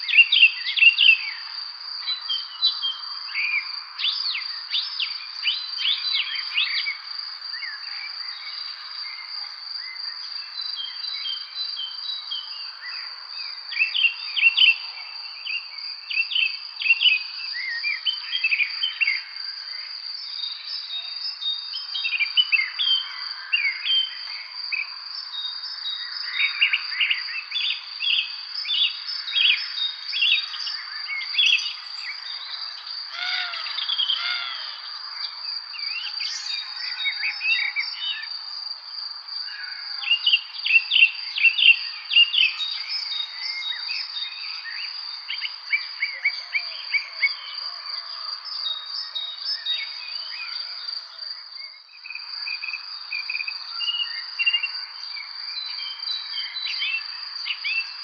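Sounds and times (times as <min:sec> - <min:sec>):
birds chirping and singing: 0:28.9 - 0:38.4
high insect trill: 0:29.0 - 0:46.0.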